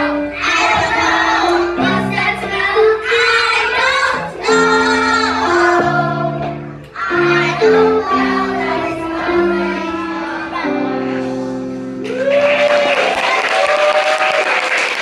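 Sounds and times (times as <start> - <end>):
children singing: 0.0 - 11.7
instrumental accompaniment: 0.0 - 12.2.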